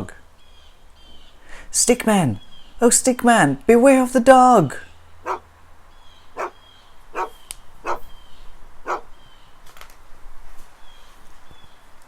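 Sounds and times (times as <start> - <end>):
dog barking: 5.2 - 5.4, 6.4 - 8.1, 8.8 - 9.1.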